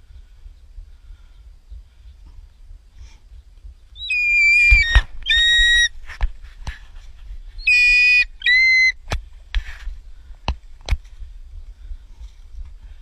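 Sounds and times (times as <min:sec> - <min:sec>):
bird of prey calling: 0:04.0 - 0:06.0, 0:07.6 - 0:09.1
sharp clicks: 0:04.1 - 0:05.9.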